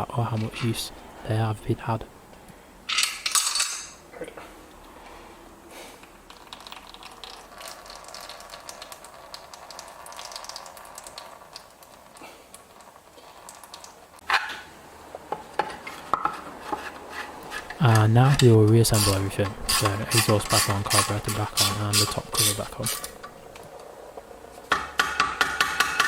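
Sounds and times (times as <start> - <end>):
hand tools clicking and rattling: 17.4 - 23.7.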